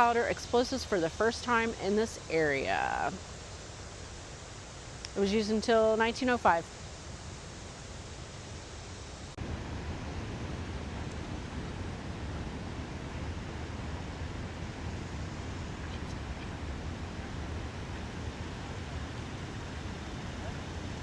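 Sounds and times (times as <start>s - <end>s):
waterfall rushing: 9.5s - 21.0s.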